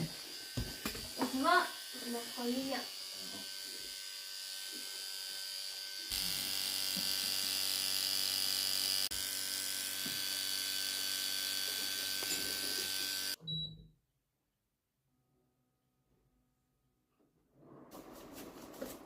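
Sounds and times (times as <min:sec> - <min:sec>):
small electric motor buzzing: 0:00.0 - 0:13.4.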